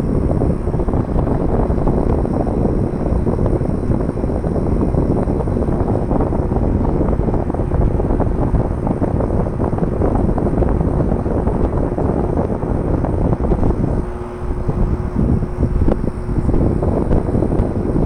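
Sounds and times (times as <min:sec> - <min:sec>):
air conditioner running: 0:00.0 - 0:18.0.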